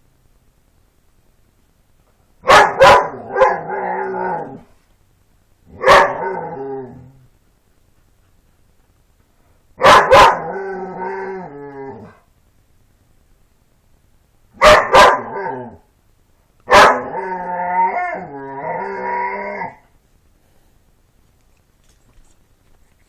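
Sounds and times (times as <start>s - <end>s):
dog barking: 2.4s - 3.8s, 5.7s - 6.3s, 9.8s - 10.5s, 14.6s - 15.5s, 16.7s - 17.1s
dog howling whine: 3.4s - 4.7s, 10.3s - 12.2s, 16.7s - 19.9s.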